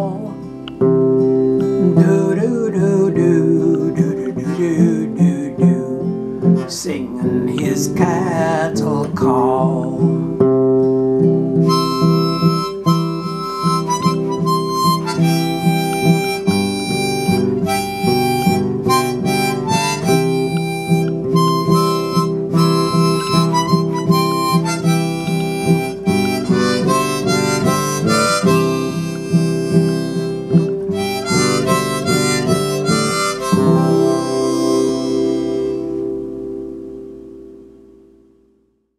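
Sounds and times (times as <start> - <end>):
strummed acoustic guitar: 0.0 - 38.6
harmonica solo: 11.2 - 36.9.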